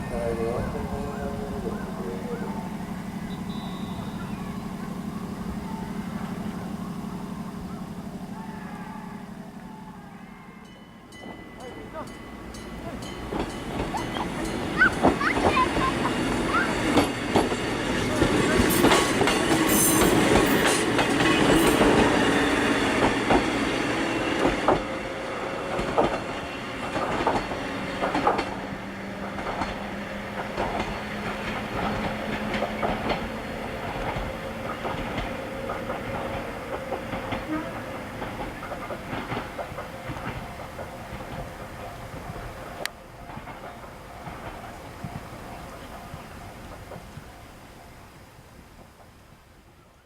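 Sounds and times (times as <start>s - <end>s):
train gear whine: 0.0s - 48.3s
electric train pulling away: 0.0s - 49.1s
wheels clicking over rail joints: 11.1s - 49.4s.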